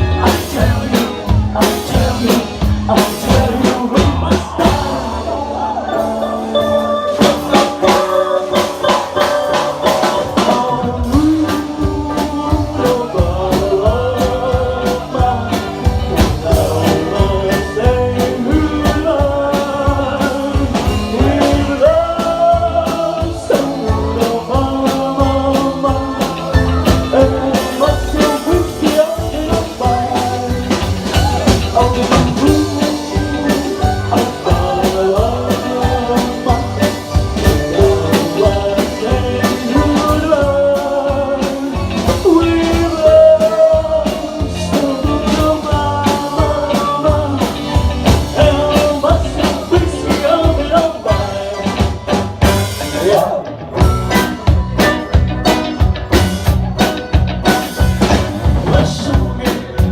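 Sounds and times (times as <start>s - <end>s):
bass guitar: 0.0s - 59.9s
drum kit: 0.0s - 59.9s
electric guitar: 0.0s - 59.9s
person singing: 0.0s - 59.9s.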